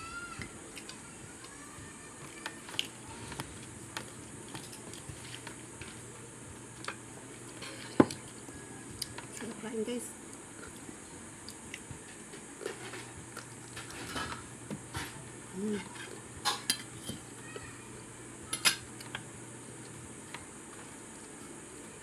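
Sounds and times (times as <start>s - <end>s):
utensils clinking on a plate: 7.5s - 8.2s, 13.7s - 17.3s, 18.5s - 18.9s.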